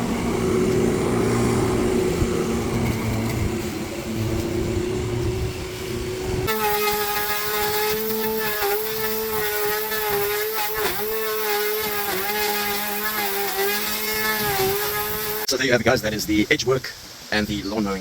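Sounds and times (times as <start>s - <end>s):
edge trimmer motor whine: 0.0s - 15.5s.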